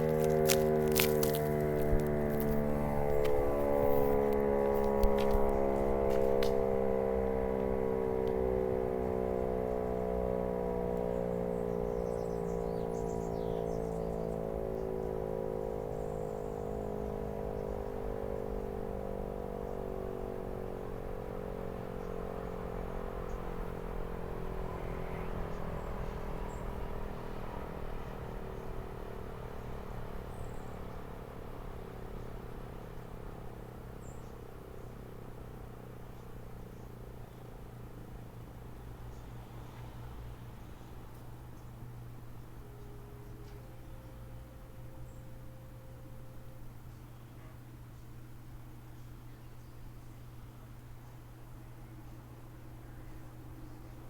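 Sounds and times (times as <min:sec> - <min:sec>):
warning siren winding down: 0:00.0 - 0:30.3.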